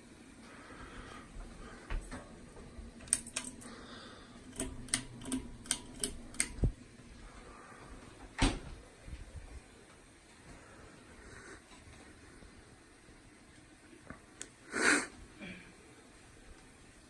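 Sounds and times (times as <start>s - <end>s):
sharp clicks and taps: 3.0s - 3.7s, 4.5s - 6.8s.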